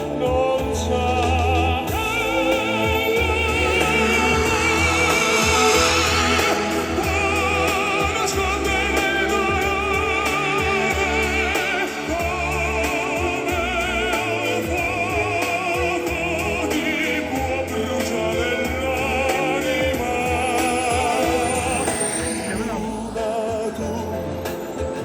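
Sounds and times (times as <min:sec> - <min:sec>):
operatic voice singing: 0:00.0 - 0:25.0
sustained accompaniment: 0:01.8 - 0:17.4.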